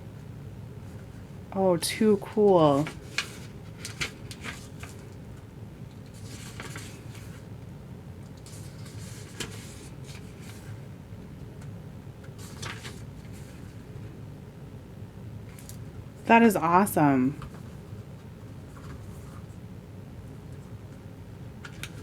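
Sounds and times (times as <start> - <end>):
paper pages rustling: 2.7 - 5.2, 6.0 - 7.5, 8.4 - 10.8, 12.2 - 13.9.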